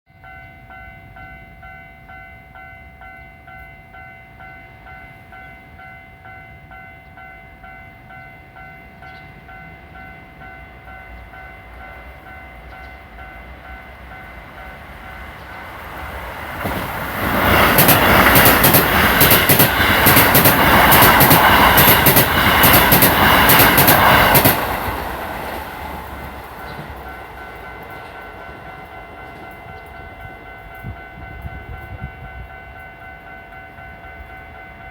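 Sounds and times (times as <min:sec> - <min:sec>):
electric trains passing: 0:00.2 - 0:34.9
train wheels clacking on rail joints: 0:16.5 - 0:30.2.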